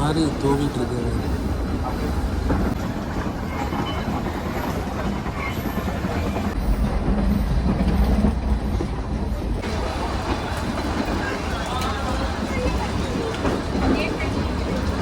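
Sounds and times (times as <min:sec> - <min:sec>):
train rumbling and rattling: 0:00.0 - 0:15.0.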